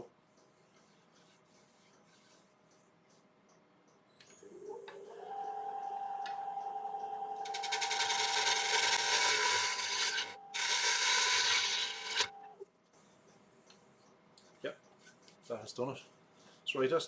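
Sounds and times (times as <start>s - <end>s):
lathe motor humming: 7.4s - 12.4s
tool scraping spinning wood: 7.4s - 12.4s.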